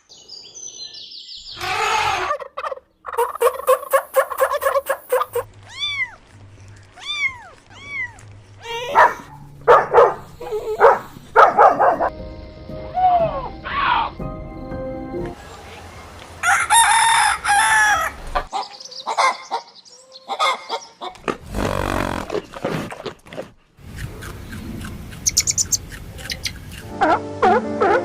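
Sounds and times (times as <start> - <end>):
chickens clucking: 1.6 - 5.5
rooster crowing: 16.4 - 18.5.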